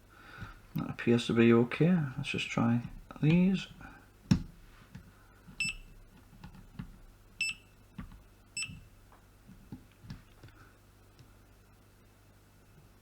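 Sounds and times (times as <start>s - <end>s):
multimeter high beeps: 5.6s - 5.9s, 7.4s - 7.7s.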